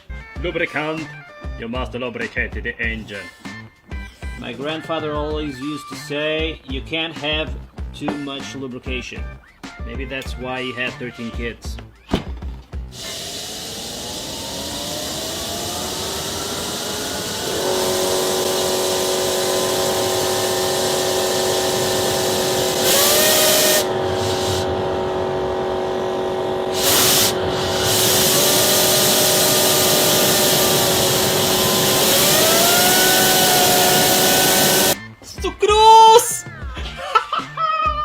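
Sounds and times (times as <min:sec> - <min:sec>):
turbine whine: 0:12.7 - 0:35.0
hiss blasts: 0:12.9 - 0:35.0.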